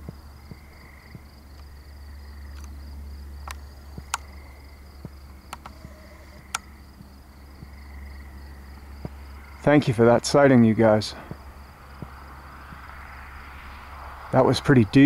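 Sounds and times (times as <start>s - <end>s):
crickets chirring: 0.0s - 15.0s
low steady hum: 0.0s - 15.0s
sharp clicks: 2.5s - 2.8s, 3.4s - 4.4s, 5.0s - 6.8s.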